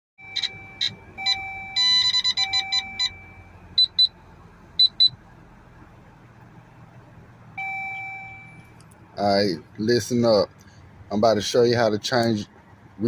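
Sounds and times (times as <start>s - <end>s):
two-note warning tone: 0.2s - 4.1s, 7.6s - 8.8s
short high beeps: 7.6s - 8.8s.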